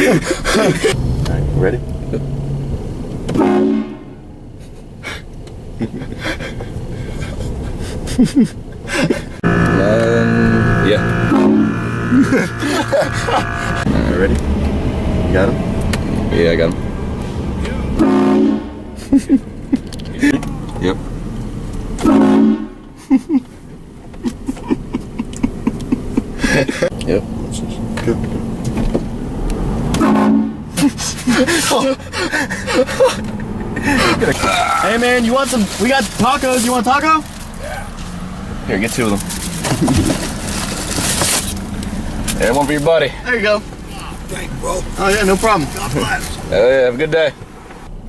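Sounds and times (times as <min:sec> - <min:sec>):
vehicle rumbling: 0:00.0 - 0:48.0
train horn blast: 0:03.4 - 0:04.4, 0:09.4 - 0:14.1, 0:18.0 - 0:19.0, 0:22.0 - 0:22.9, 0:30.0 - 0:30.6
rustles and clicks: 0:33.1 - 0:38.1, 0:38.8 - 0:42.9.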